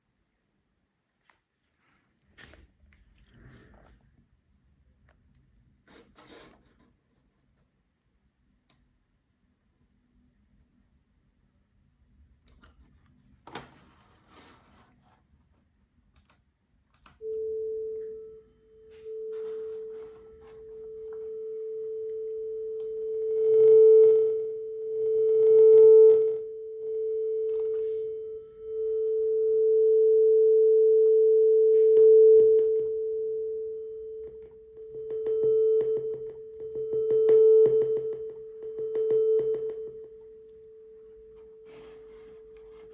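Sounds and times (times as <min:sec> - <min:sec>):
faint clicks: 0:16.1 - 0:17.2
sine test tone: 0:17.2 - 0:42.9.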